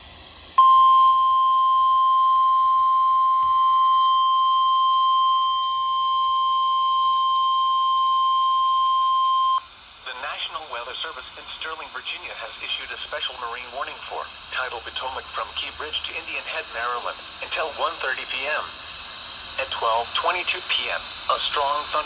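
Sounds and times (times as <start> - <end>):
steady high-pitched alarm beep: 0.6 - 9.7.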